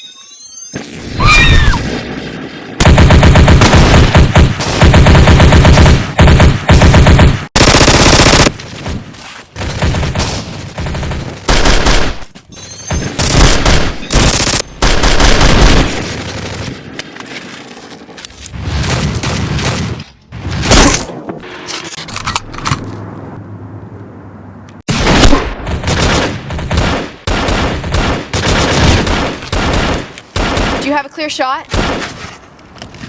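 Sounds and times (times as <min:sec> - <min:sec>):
automatic gunfire bursts: 0:02.8 - 0:08.6, 0:10.8 - 0:12.2, 0:13.2 - 0:16.0.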